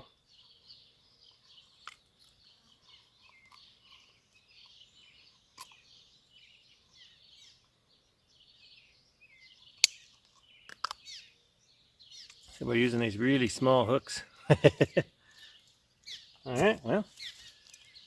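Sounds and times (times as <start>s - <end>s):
faint birds chirping: 0.0s - 18.0s
small sharp clicks: 9.8s - 11.1s.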